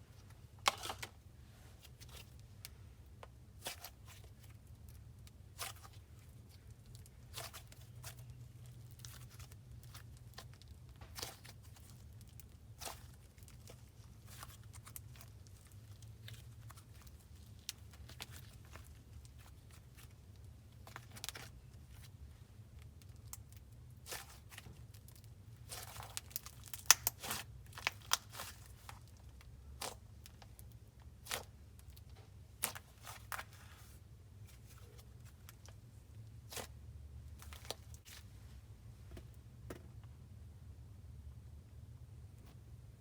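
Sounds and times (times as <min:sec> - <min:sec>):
slime popping and crackling: 0:25.6 - 0:28.9.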